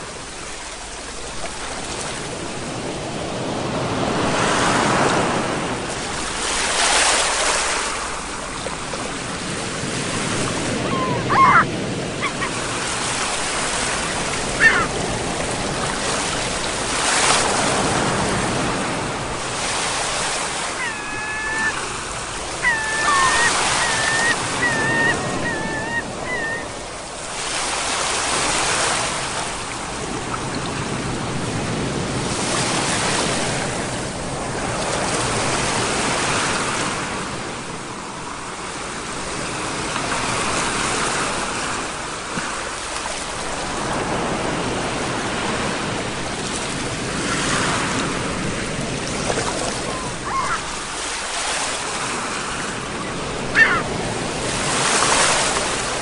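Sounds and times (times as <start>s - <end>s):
ocean waves breaking on shore: 0.0s - 56.0s
high wavering call: 22.6s - 26.8s.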